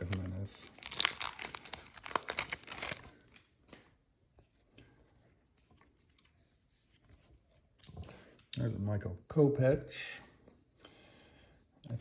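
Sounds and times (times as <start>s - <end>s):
foil wrapper crinkling and tearing: 0.0s - 3.5s
cards rustling and clicking: 0.0s - 3.8s.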